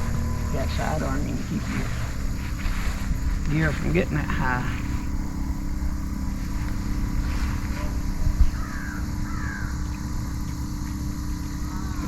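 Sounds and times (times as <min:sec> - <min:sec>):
bird calling: 0:00.0 - 0:12.0
steady low rumble: 0:00.0 - 0:12.0.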